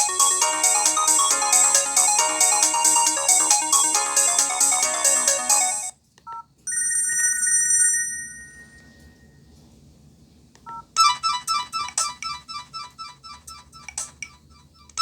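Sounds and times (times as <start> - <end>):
fast high beeping notes: 0.0 - 5.9
phone ringtone melody: 0.0 - 9.2, 10.7 - 13.2.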